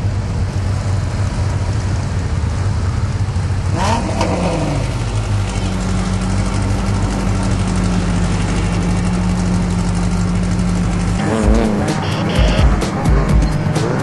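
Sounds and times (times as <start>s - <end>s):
truck engine running: 0.0s - 14.0s
music with heavy bass beats: 11.1s - 14.0s.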